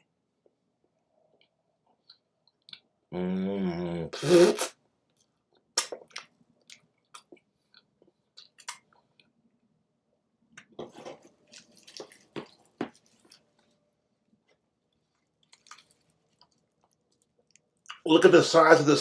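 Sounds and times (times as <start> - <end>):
person humming mmm: 3.2 - 4.7
short breathy burst: 4.2 - 4.7
chewing crunchy food: 10.6 - 13.7, 14.4 - 18.0.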